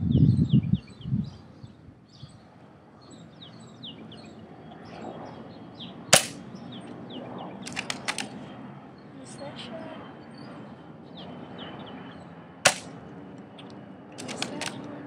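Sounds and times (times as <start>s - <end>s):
small birds chirping: 0.0s - 12.4s
airsoft rifle shot crack: 6.1s - 6.4s, 7.6s - 8.3s, 12.7s - 13.0s, 14.2s - 14.8s
quick clicks: 7.6s - 8.4s, 12.7s - 12.9s, 14.2s - 14.9s.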